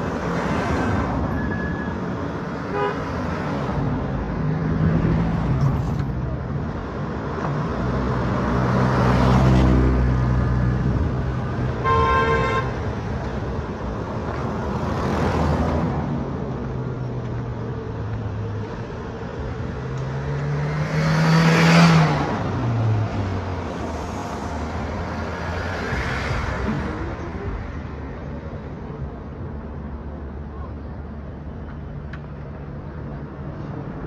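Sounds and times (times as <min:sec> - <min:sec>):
vehicles driving past: 0:00.0 - 0:34.0
car horn toot: 0:02.7 - 0:03.1, 0:11.8 - 0:12.8.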